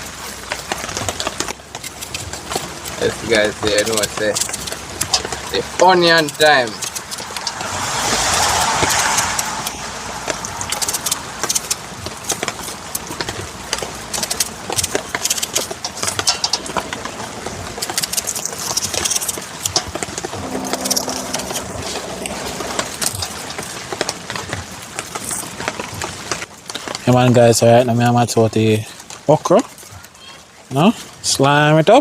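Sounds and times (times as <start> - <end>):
low steady hum: 20.2 - 24.0.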